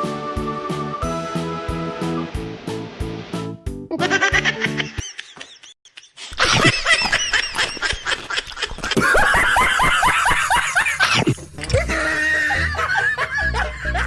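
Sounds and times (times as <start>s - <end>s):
high-pitched laughing chatter: 11.8s - 14.0s.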